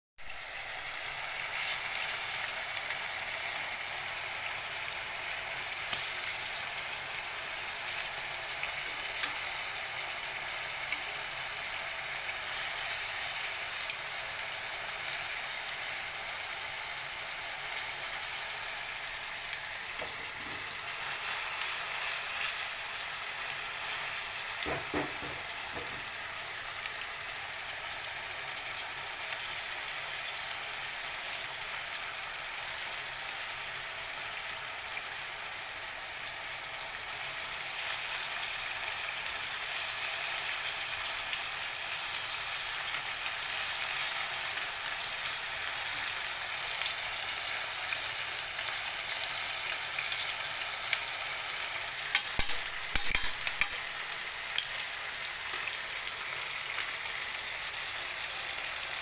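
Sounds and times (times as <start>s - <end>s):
fish sizzling in a pan: 0.2s - 59.0s.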